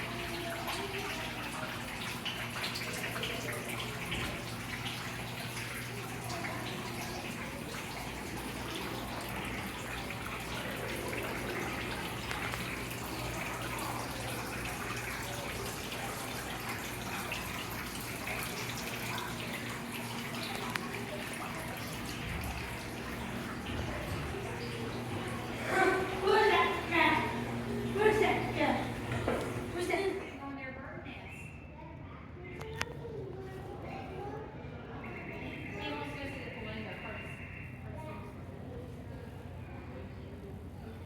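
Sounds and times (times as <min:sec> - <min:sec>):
rain falling: 0:02.3 - 0:30.2.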